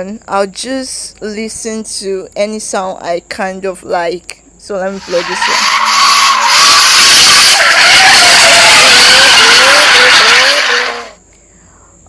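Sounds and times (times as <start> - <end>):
car tyres squealing: 5.0 - 11.2.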